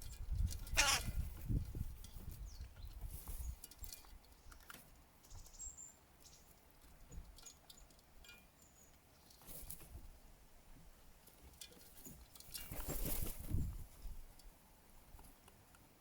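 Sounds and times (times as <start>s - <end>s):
bird chirp: 4.3s - 6.5s, 8.5s - 9.4s.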